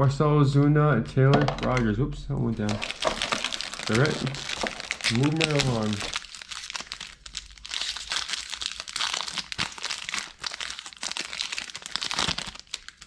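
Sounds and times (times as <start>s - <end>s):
foil wrapper crinkling and tearing: 2.6s - 13.0s.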